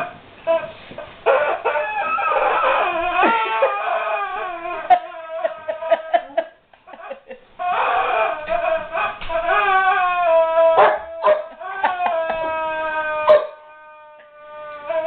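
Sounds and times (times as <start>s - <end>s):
dog whining and whimpering: 0.0s - 15.0s.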